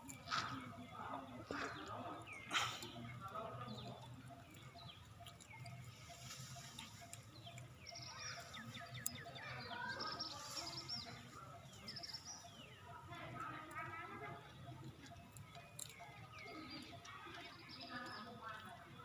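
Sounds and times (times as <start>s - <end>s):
rapid high chirping calls: 3.9s - 13.0s.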